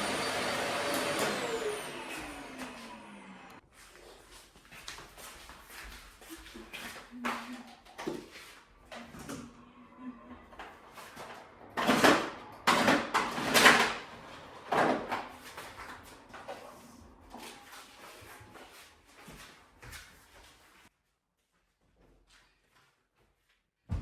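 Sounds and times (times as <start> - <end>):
drawers scraping: 10.4 - 18.6
household clatter: 10.6 - 16.8.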